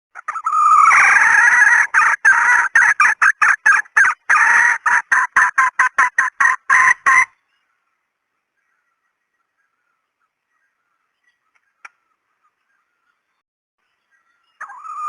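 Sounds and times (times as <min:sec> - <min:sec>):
chicken clucking call: 0:00.2 - 0:07.4, 0:14.6 - 0:15.0.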